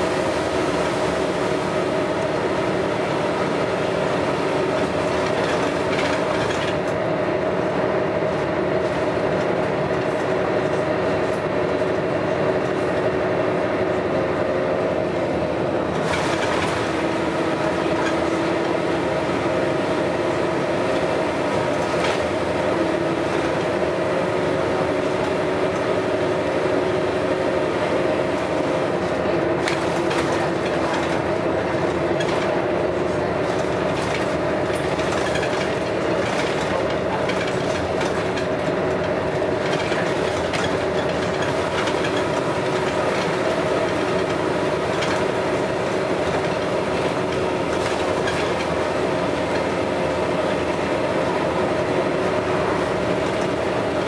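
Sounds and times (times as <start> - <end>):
bus diesel engine drone: 0.0 - 54.0
running and rattling noise: 0.0 - 54.0.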